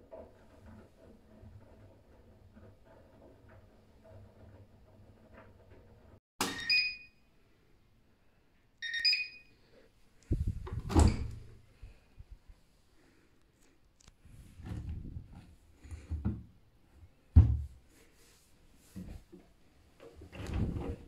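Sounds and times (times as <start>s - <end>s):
short electronic beeps: 8.8s - 9.5s
washing machine door thud and rattle: 10.6s - 11.5s.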